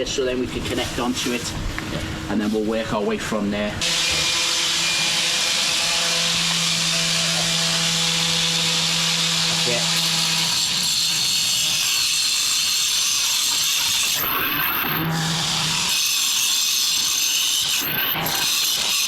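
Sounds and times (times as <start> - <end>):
disc cutter grinding stone: 3.8 - 19.0.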